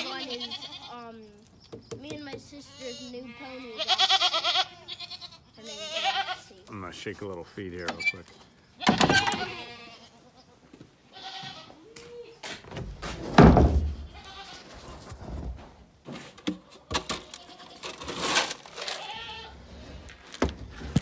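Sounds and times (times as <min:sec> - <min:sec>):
goats bleating: 0:00.0 - 0:01.0, 0:02.6 - 0:06.6, 0:08.8 - 0:12.0, 0:14.0 - 0:14.7, 0:18.7 - 0:20.2
loud thump: 0:13.1 - 0:14.1
knocks: 0:13.3 - 0:14.1.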